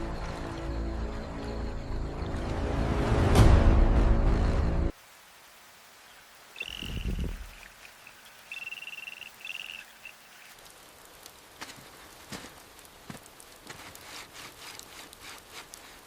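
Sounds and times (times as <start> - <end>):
light dripping rain: 4.9 - 16.0
high trilling animal call: 6.6 - 10.5.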